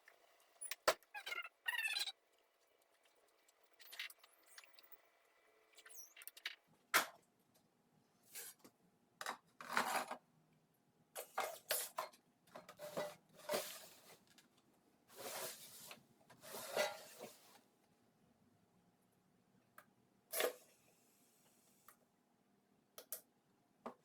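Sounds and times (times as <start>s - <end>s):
plastic parts scraping and rubbing: 11.2s - 14.3s, 15.1s - 17.6s.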